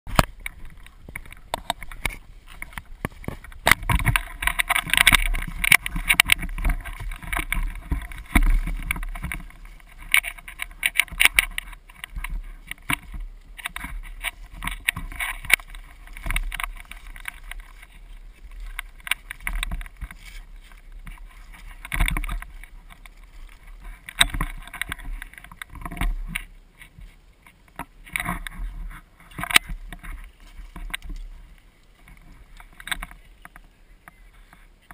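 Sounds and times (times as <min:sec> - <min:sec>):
rifle handling knocks and rattles: 0:00.1 - 0:34.2.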